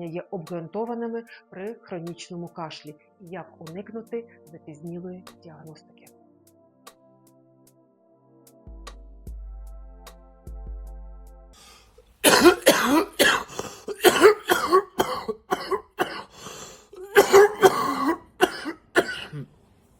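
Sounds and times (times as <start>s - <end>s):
person coughing: 12.2s - 19.6s.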